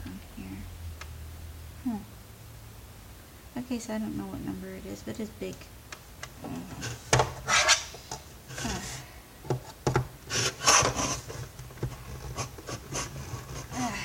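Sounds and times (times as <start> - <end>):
screwdriver scraping plastic parts: 10.3 - 13.8.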